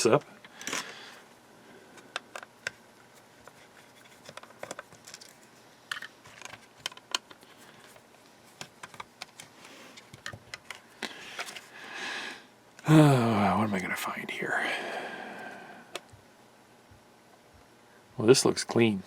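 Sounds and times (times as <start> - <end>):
plastic parts clicking and tapping: 2.0 - 2.8, 3.4 - 8.0, 8.6 - 11.7.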